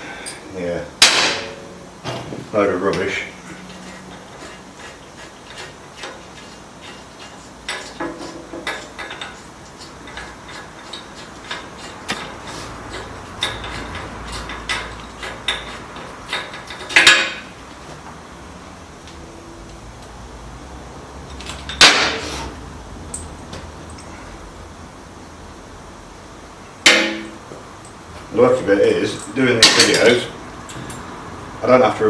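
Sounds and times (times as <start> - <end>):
loud metal clank: 1.0 - 2.5, 10.1 - 17.6, 21.5 - 23.3, 26.8 - 27.5, 29.6 - 31.0
metal tools clinking: 2.9 - 17.5, 21.3 - 24.4, 26.8 - 31.3.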